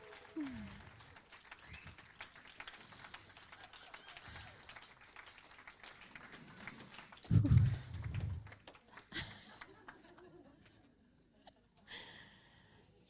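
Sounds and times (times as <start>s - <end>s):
audience clapping: 0.0s - 10.4s.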